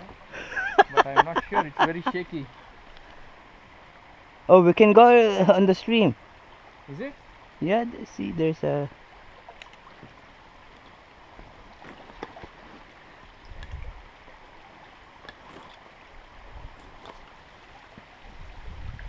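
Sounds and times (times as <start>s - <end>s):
stream water running: 0.0s - 19.0s
faint clicks: 9.5s - 9.9s.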